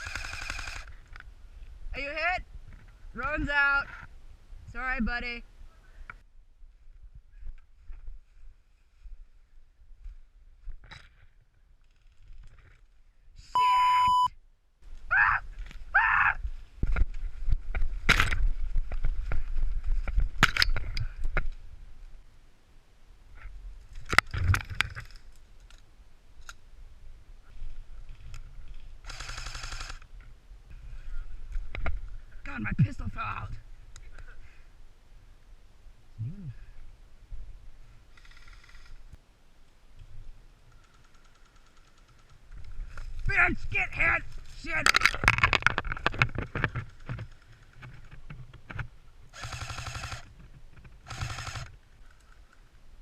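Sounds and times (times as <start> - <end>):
toy gun full-auto bursts: 0.0 - 0.9, 29.1 - 30.0, 49.4 - 50.2, 51.1 - 51.7
scattered clicks: 40.7 - 42.7.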